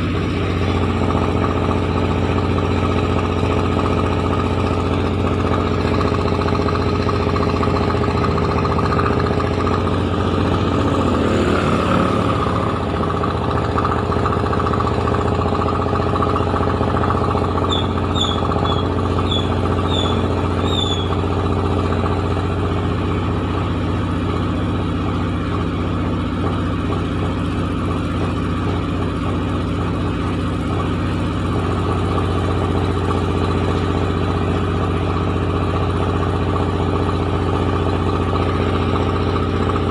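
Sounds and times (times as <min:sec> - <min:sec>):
short high chirps: 0:17.7 - 0:21.2.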